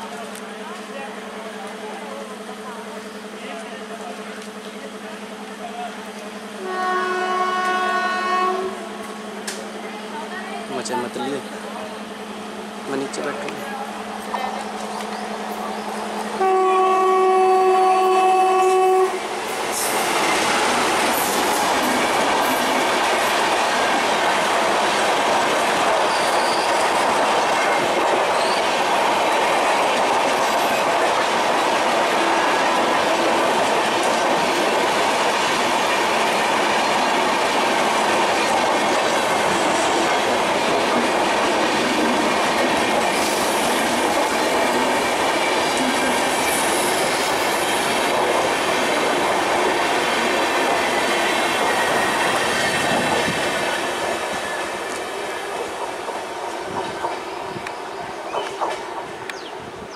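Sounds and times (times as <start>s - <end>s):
train wheels on rails: 0.0s - 59.9s
train horn blast: 6.6s - 8.8s, 16.4s - 19.2s.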